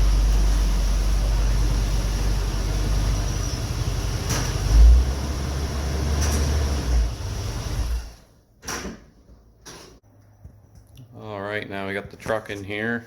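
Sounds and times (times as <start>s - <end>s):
pickup truck engine running: 0.0s - 8.1s.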